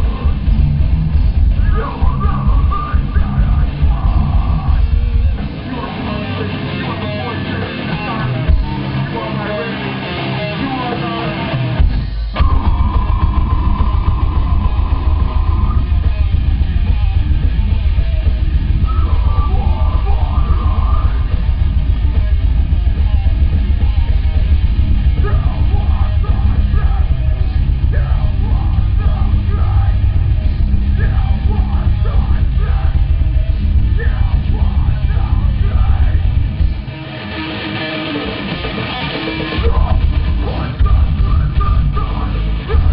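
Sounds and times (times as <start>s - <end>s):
bass guitar: 0.0s - 42.9s
electric guitar: 0.0s - 42.9s
heavy drums: 0.0s - 42.9s
person yelling vocals: 25.2s - 27.3s, 27.9s - 30.0s.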